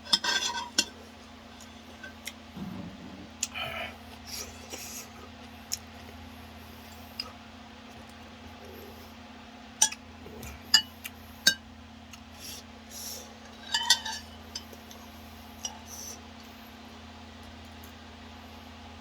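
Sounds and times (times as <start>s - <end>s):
utensils clinking against a bowl: 0.0s - 1.0s, 13.5s - 14.8s.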